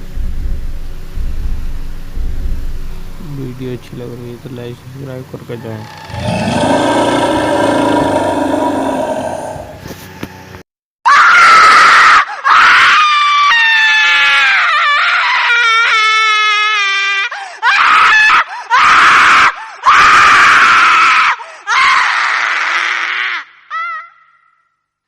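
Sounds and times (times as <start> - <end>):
woman shrieking: 11.1 - 24.4.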